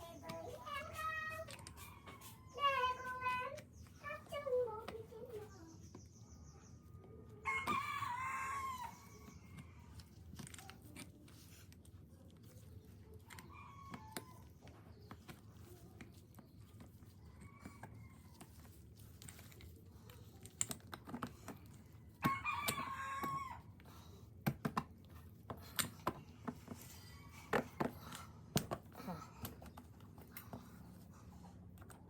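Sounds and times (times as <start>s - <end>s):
rooster crowing: 7.4s - 9.2s, 22.2s - 23.6s
small clicks and knocks: 9.5s - 23.4s, 24.4s - 30.8s.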